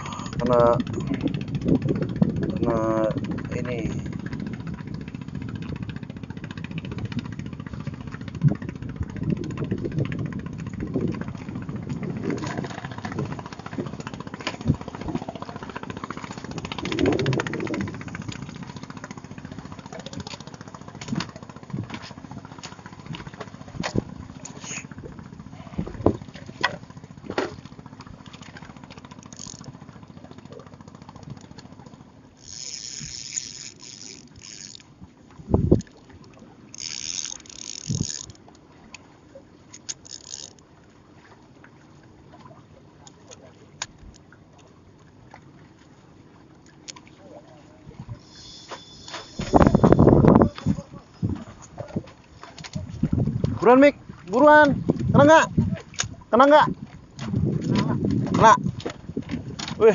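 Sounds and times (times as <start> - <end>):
small engine running: 11.5 - 25.8, 26.7 - 35.0, 36.7 - 38.4, 48.2 - 50.9.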